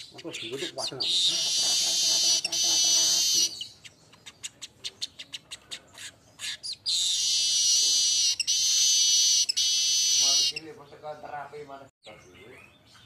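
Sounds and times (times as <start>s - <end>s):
buzzy high-pitched bird song: 0.0s - 5.5s, 6.4s - 10.8s.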